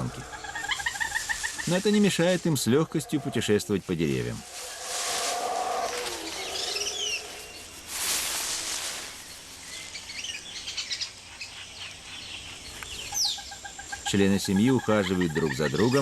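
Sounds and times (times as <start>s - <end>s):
leaves rustling: 0.0s - 11.5s
small birds chirping: 0.0s - 16.0s.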